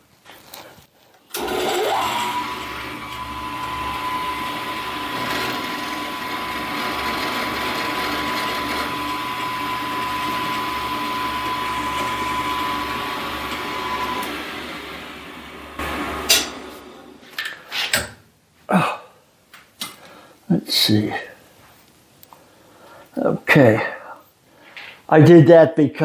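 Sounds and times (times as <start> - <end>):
milling machine motor whining: 1.4 - 17.5.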